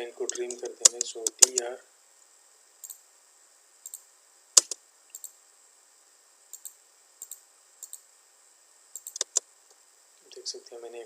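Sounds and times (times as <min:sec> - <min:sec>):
faint steady hiss: 0:00.0 - 0:11.0
computer mouse clicking: 0:00.3 - 0:01.6, 0:03.8 - 0:04.0, 0:04.6 - 0:05.4, 0:06.5 - 0:08.0, 0:08.9 - 0:09.4.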